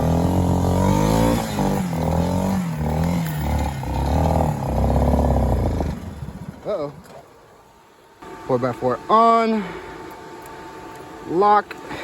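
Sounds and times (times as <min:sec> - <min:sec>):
atv engine revving: 0:00.0 - 0:06.9.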